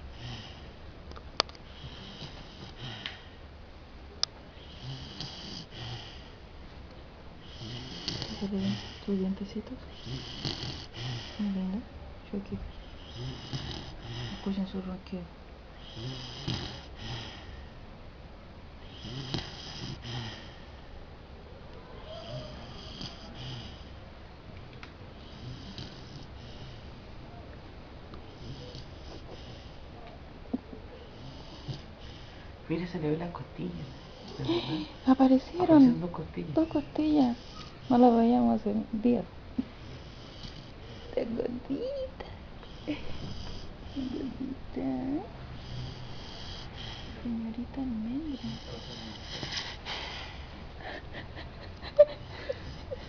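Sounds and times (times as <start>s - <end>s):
dog snoring and sniffing: 0.0s - 0.8s, 1.6s - 3.4s, 4.5s - 6.4s, 7.4s - 11.8s, 12.7s - 14.8s, 15.8s - 17.6s, 18.8s - 20.8s, 22.1s - 24.0s, 25.1s - 26.9s, 28.2s - 29.9s, 31.1s - 38.8s, 39.8s - 42.0s, 42.6s - 51.0s, 52.0s - 53.0s.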